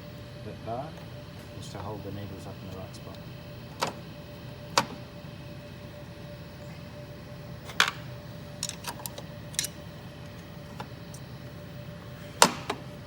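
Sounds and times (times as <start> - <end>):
steady background hum: 0.0 - 13.0
metal clicks of small parts: 8.6 - 9.8.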